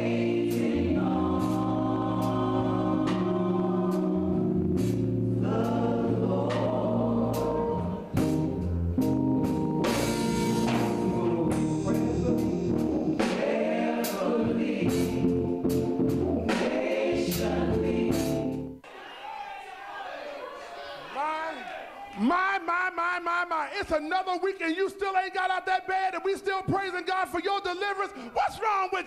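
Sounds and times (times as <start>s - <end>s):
gospel choir singing: 0.0s - 8.6s, 9.9s - 21.8s
band with bass and drums: 4.7s - 5.8s, 8.1s - 13.5s, 14.8s - 18.4s.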